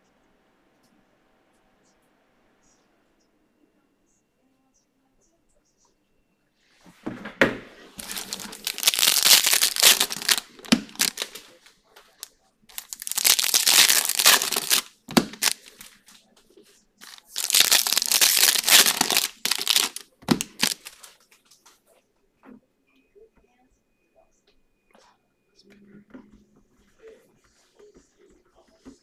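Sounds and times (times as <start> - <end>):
foil wrappers tearing and crinkling: 8.0 - 11.5, 12.7 - 15.9, 17.0 - 21.1.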